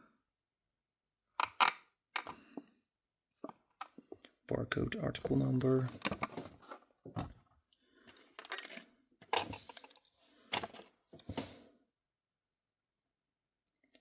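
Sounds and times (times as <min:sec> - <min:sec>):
plastic scraping and rustling: 0:05.3 - 0:07.3, 0:08.1 - 0:11.6.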